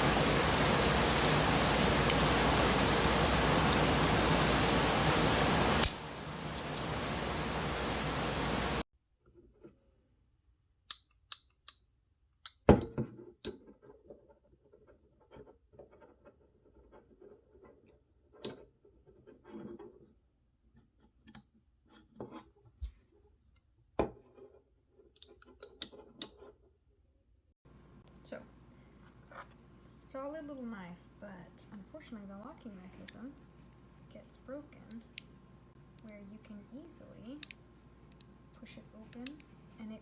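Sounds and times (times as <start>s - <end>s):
light handling noises: 0.0s - 8.8s
steady hiss: 0.0s - 8.8s
pocket knife metallic clicks: 5.8s - 6.0s.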